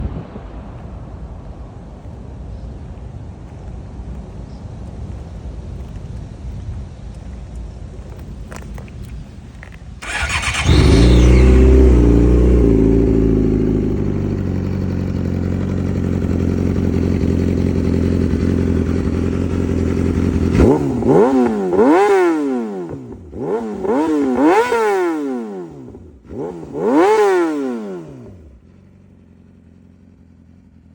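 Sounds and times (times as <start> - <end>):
motorcycle engine idling and revving: 8.1 - 30.9.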